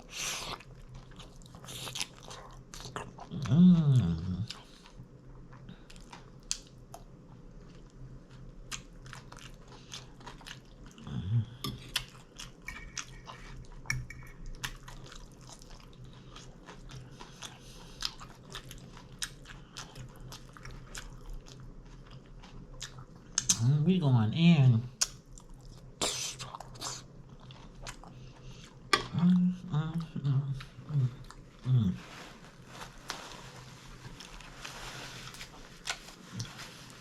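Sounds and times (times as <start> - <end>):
chewing and crunching food: 0.0 - 23.8, 24.9 - 37.0.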